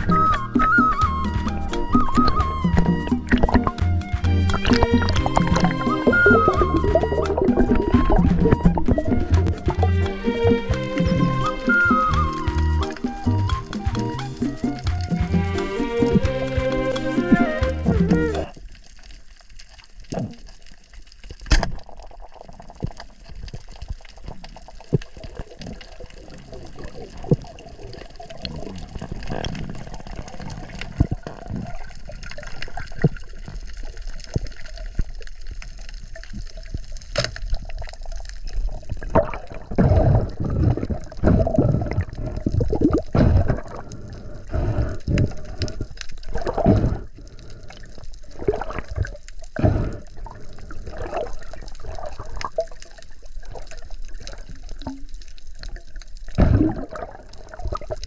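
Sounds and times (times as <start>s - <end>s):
underwater sloshing and bubbling: 0.0s - 58.0s.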